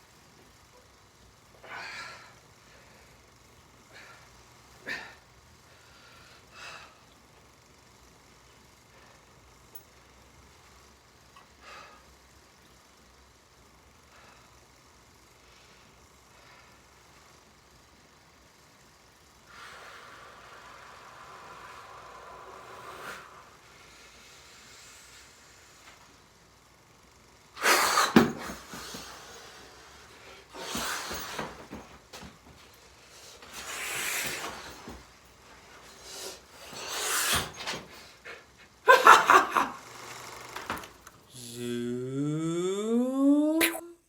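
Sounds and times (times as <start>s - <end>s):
steady hiss: 5.6s - 38.8s
man breathing and gasping: 41.3s - 43.8s.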